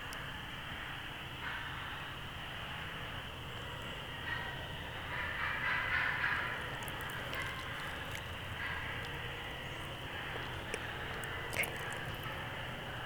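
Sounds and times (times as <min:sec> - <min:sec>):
steady outdoor hiss: 0:00.0 - 0:13.0
distant wild turkeys calling: 0:04.4 - 0:13.0.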